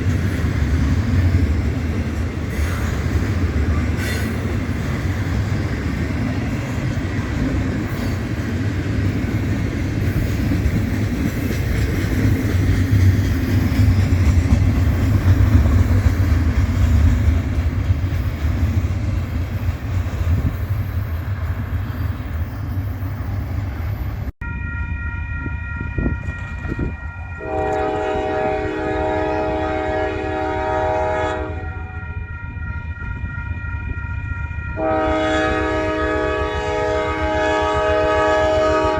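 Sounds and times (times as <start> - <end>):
freight train cars rumbling: 0.0 - 38.9
locomotive air horn: 24.4 - 32.4, 34.6 - 38.9.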